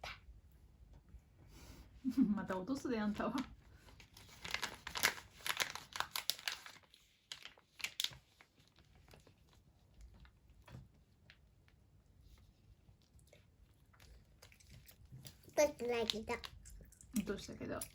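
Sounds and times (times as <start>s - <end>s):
plastic crinkling: 3.2s - 11.4s, 14.4s - 17.9s.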